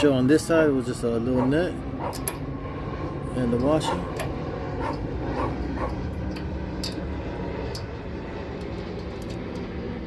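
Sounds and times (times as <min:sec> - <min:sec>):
steady low hum: 0:00.0 - 0:10.0
dog yelping: 0:01.4 - 0:02.2, 0:04.8 - 0:06.0.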